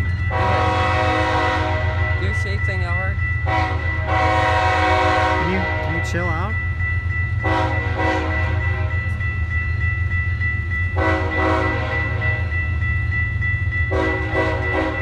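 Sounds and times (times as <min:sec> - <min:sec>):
locomotive air horn toots: 0:00.3 - 0:02.4, 0:03.4 - 0:06.2, 0:07.4 - 0:09.1, 0:11.0 - 0:12.5, 0:13.9 - 0:15.0.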